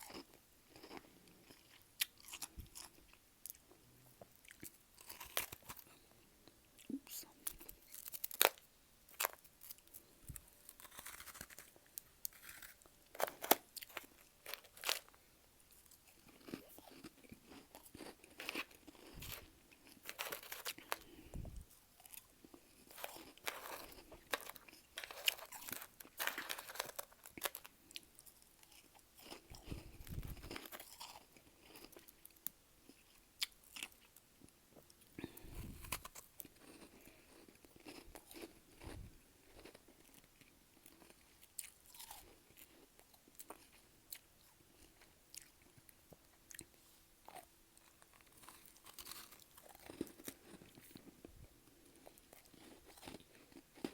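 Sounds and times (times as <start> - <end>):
person crunching freezer frost: 4.5 - 6.0, 7.4 - 15.2, 15.8 - 21.4, 22.0 - 32.1, 35.2 - 44.2, 47.3 - 51.1, 51.9 - 53.9.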